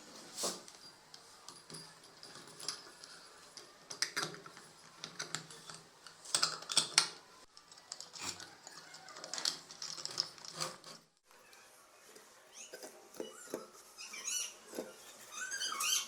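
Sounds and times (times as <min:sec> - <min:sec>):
small hard parts clicking: 0:01.1 - 0:11.2.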